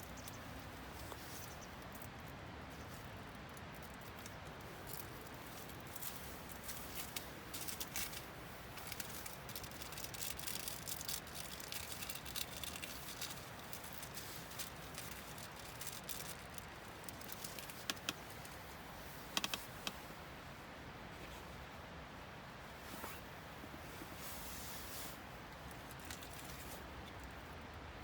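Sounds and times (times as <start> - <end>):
small clicks and light rattling: 1.8 - 20.0, 25.5 - 27.4.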